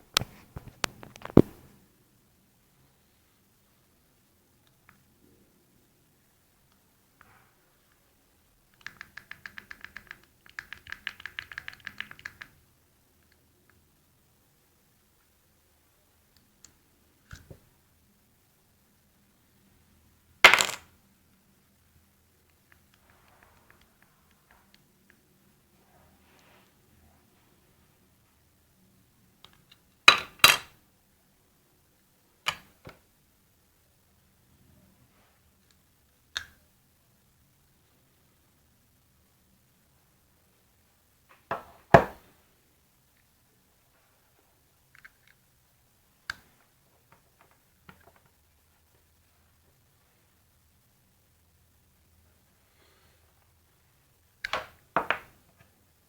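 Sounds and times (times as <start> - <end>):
small hard object clicking: 8.7 - 12.6.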